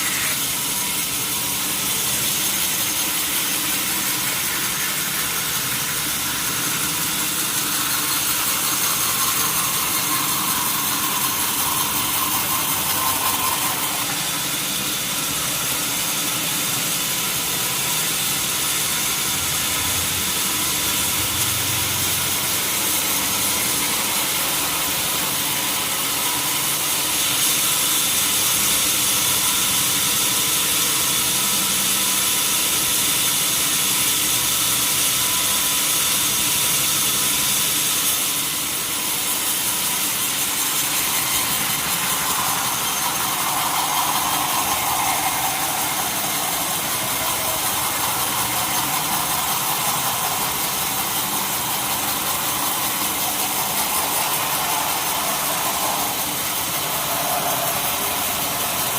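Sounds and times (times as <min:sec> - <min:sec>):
band saw sawing wood: 0:00.0 - 0:19.2, 0:38.0 - 0:58.9.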